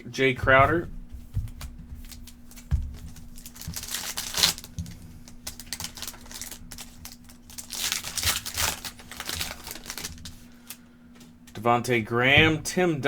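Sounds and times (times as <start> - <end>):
cards being shuffled: 0.4 - 11.3
foil wrapper crinkling and tearing: 1.5 - 10.8.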